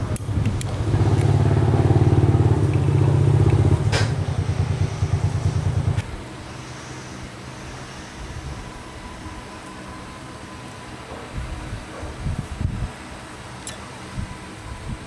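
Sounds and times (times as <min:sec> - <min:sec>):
motorbike engine running: 0:00.0 - 0:06.4.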